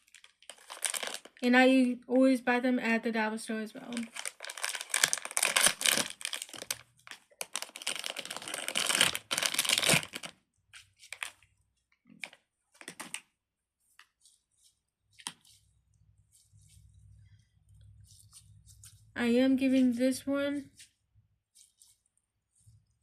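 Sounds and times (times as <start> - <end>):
plastic crinkling and rustling: 0.0 - 1.4, 3.8 - 15.7.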